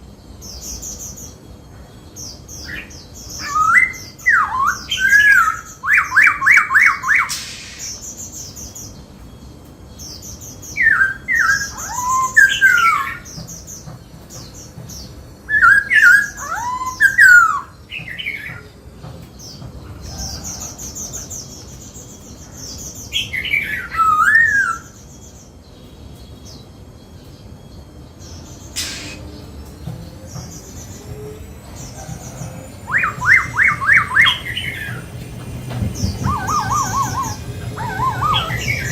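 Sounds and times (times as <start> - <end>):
laughingthrush singing: 28.4 - 38.9.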